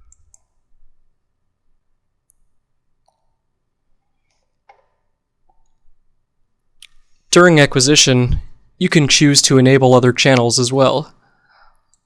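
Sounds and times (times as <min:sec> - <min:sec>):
faint mouse clicks: 0:00.0 - 0:00.6, 0:02.2 - 0:03.4, 0:04.2 - 0:05.8, 0:11.8 - 0:12.0.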